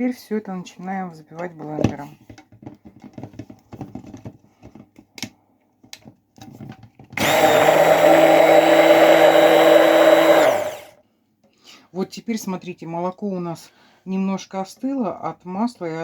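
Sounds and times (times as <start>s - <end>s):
immersion blender running: 7.2s - 11.0s.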